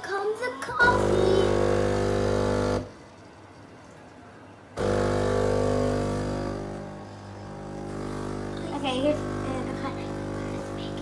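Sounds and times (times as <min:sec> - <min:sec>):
coffee machine pump humming: 0:00.8 - 0:03.0, 0:04.8 - 0:11.0.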